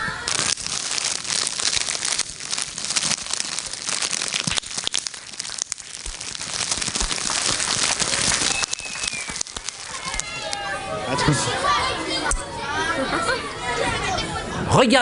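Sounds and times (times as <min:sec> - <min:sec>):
crackle of small snaps: 0:00.3 - 0:10.6.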